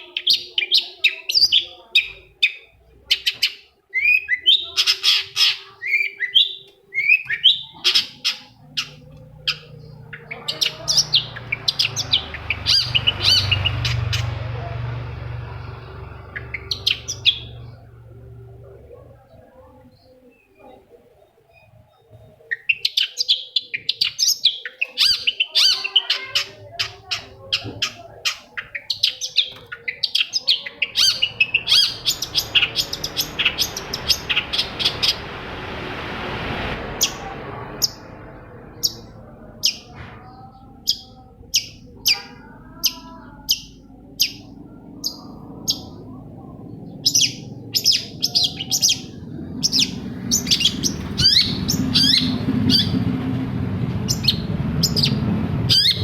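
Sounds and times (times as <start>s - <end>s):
shrike singing sharp chirps: 7.0s - 18.2s, 24.9s - 35.7s, 46.9s - 53.2s
low rumble: 8.5s - 20.0s, 30.6s - 56.0s
rushing hiss: 31.0s - 39.8s.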